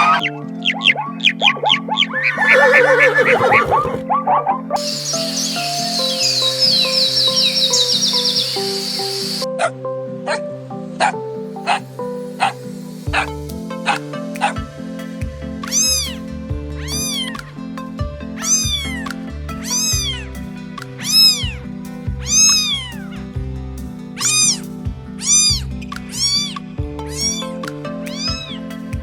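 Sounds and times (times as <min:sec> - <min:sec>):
background music: 0:00.0 - 0:29.0
cat meowing: 0:02.4 - 0:04.0.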